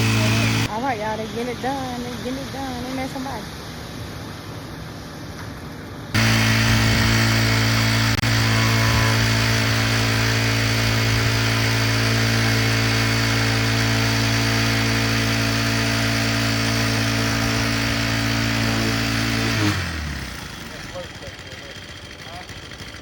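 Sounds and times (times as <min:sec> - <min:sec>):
small engine machine running: 0:00.0 - 0:00.7, 0:06.2 - 0:23.0.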